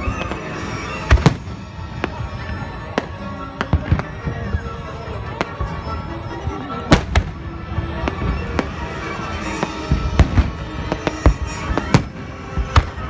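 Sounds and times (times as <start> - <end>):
fireworks bangs: 0.0 - 13.0
music: 0.0 - 13.0.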